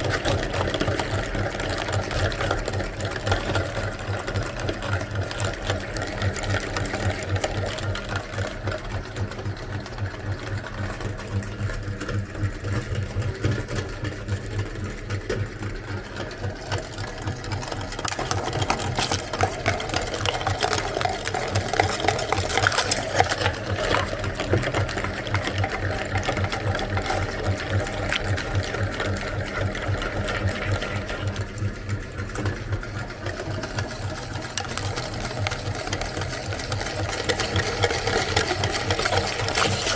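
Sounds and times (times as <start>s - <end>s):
electric meat grinder motor: 0.0s - 39.9s
cracking and crunching: 16.7s - 31.4s, 33.2s - 39.9s.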